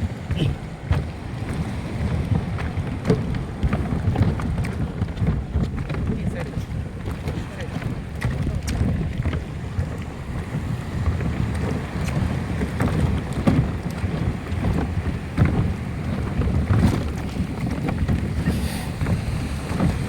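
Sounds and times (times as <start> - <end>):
wind buffeting microphone: 0.0 - 20.0
light knocks and taps: 0.2 - 10.1.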